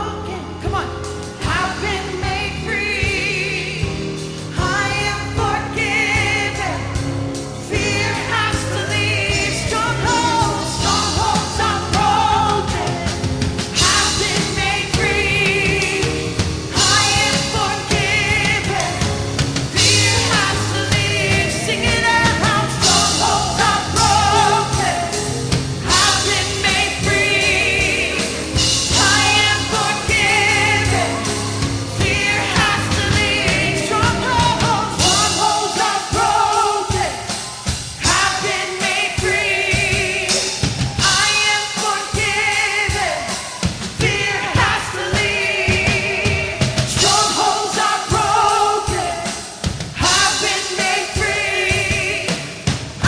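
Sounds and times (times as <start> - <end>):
deep bass: 0.0 - 35.5
drums: 0.0 - 53.0
worship band playing: 0.0 - 53.0
people singing: 1.4 - 53.0.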